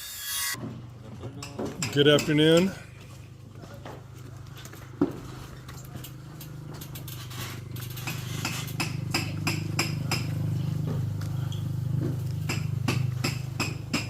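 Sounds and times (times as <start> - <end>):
hammer on metal: 1.4 - 2.8, 8.0 - 10.4, 12.4 - 14.0.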